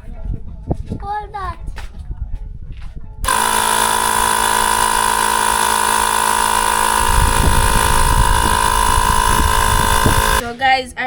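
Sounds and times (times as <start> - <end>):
electric air pump humming: 3.2 - 10.4.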